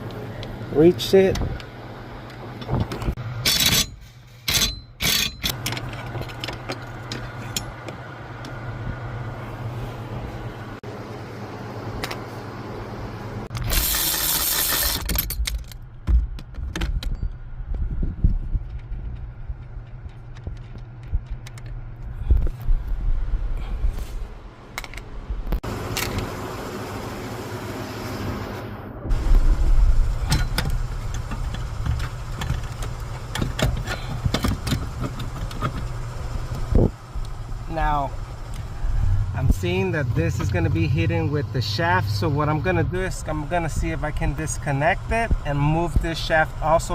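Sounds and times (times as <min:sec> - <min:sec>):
low hum: 0:01.9 - 0:46.6
tools and metal parts clinking: 0:02.6 - 0:07.9, 0:13.5 - 0:15.9, 0:30.2 - 0:35.9
hand tools clicking on metal: 0:03.5 - 0:07.7.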